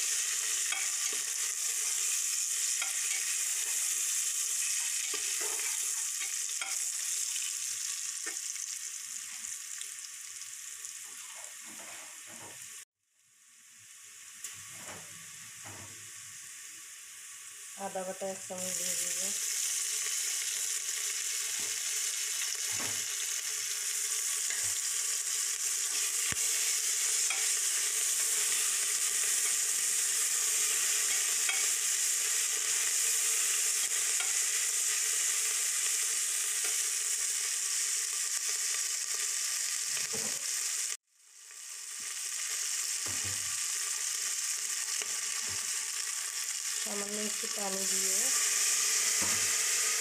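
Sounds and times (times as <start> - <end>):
spices sizzling in hot oil: 0.0 - 50.0.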